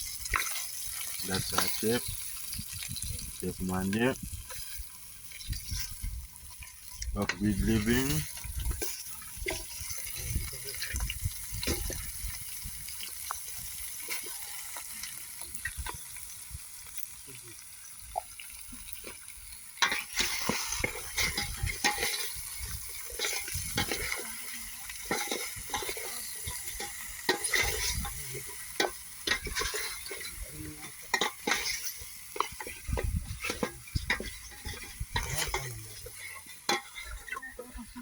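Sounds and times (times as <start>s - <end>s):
meat sizzling in a pan: 0.0s - 38.0s
utensil scraping a pan: 0.4s - 2.9s, 19.8s - 38.0s.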